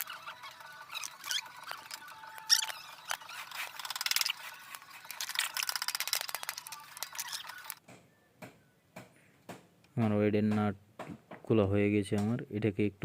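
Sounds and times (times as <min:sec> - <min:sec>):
ratchet wrench clicking: 0:05.1 - 0:07.8.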